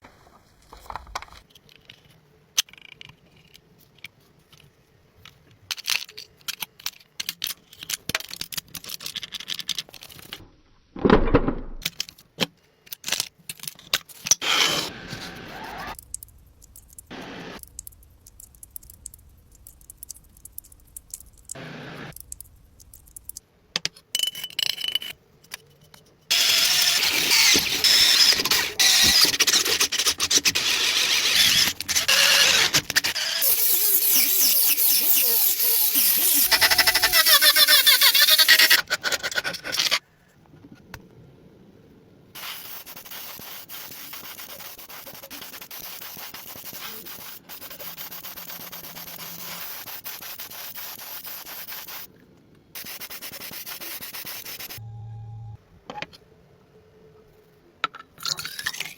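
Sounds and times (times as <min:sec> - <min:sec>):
small parts clicking and scraping: 0:00.3 - 0:10.5, 0:11.8 - 0:40.0.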